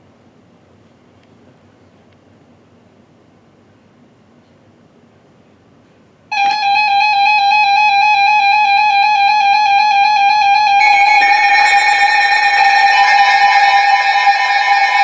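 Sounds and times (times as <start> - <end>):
electronic alert tone: 9.5 - 15.0.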